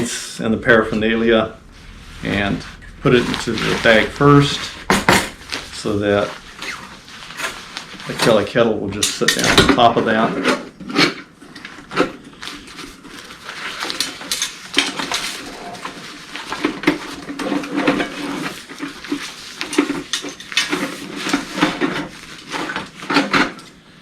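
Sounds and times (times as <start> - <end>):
bag rustling: 0.6 - 9.4.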